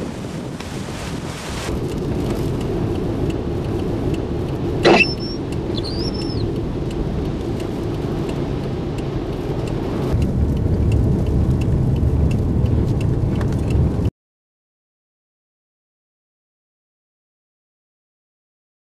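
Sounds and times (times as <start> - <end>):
storm wind buffeting microphone: 0.0 - 14.1
brief high squeak: 4.8 - 6.5.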